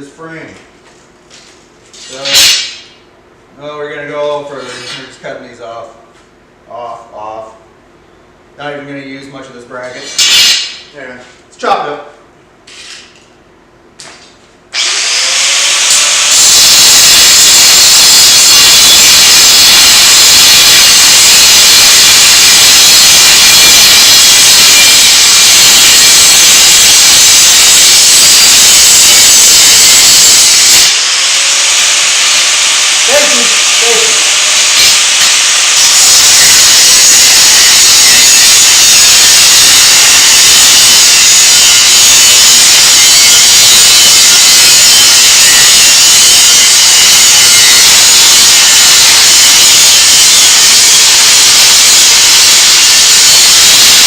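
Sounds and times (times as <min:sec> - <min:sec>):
cut-off wheel grinding steel: 0:14.8 - 0:54.0.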